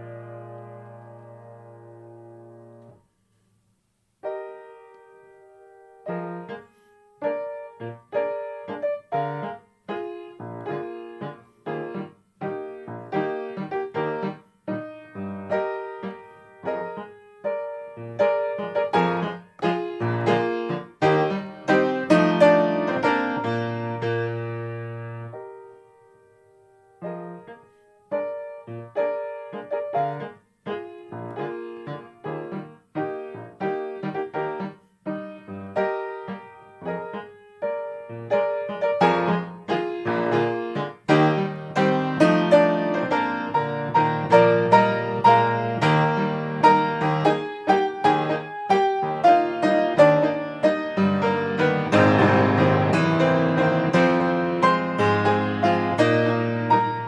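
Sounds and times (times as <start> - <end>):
grand piano playing a waltz: 0.0 - 3.1, 4.2 - 57.0.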